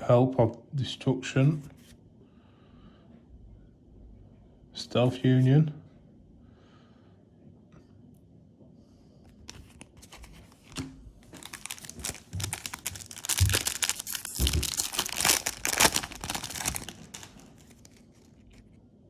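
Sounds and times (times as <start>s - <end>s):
foil wrapper crinkling and tearing: 9.6s - 18.7s.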